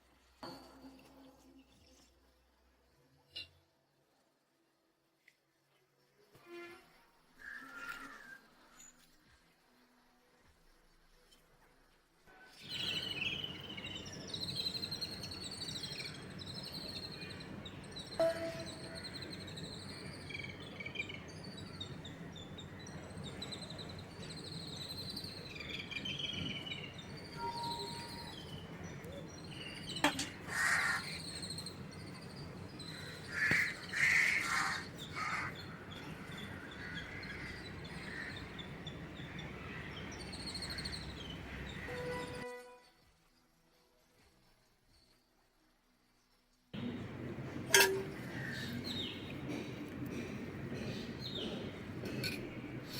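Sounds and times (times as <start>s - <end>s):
birds chirping: 12.7s - 42.4s, 46.8s - 52.9s
harsh bird calls: 12.7s - 42.4s, 46.8s - 52.9s
low background hum: 12.8s - 42.5s, 46.0s - 52.9s.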